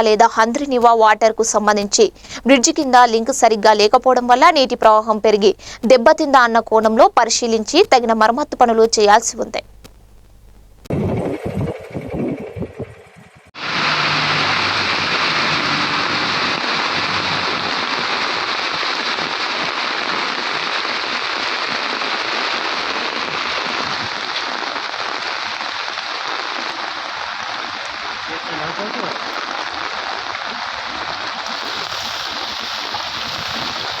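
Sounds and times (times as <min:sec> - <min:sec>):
rushing water: 0:13.6 - 0:28.4, 0:30.3 - 0:34.0.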